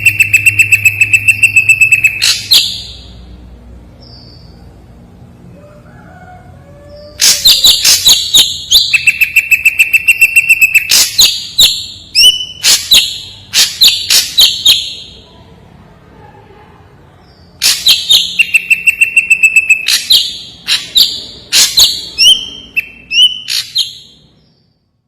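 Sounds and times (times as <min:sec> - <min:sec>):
bird singing sharp high notes: 0:00.0 - 0:03.2.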